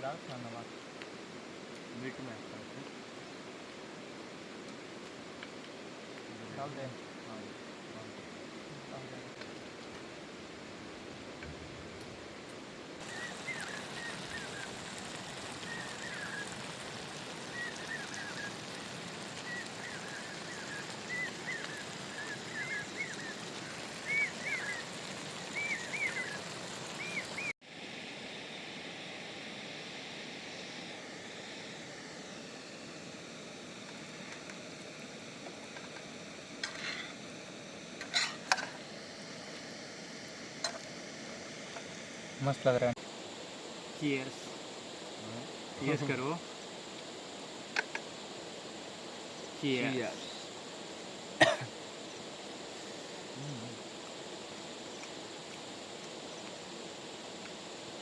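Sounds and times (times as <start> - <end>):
chicken sizzling in a pan: 13.0 - 27.5.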